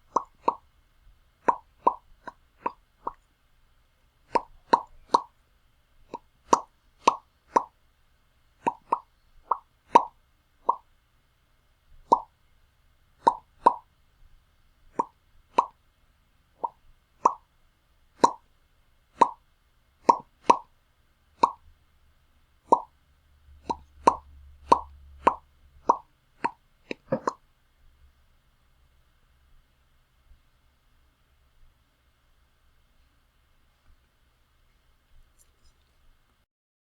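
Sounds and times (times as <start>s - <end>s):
lips popping: 0.0s - 0.6s, 1.4s - 3.2s, 4.3s - 5.3s, 6.1s - 7.8s, 8.6s - 10.8s, 12.0s - 12.3s, 13.2s - 13.9s, 14.9s - 15.8s, 16.6s - 17.5s, 18.2s - 18.4s, 19.2s - 19.4s, 20.0s - 20.7s, 21.4s - 21.6s, 22.7s - 22.9s, 23.7s - 27.4s.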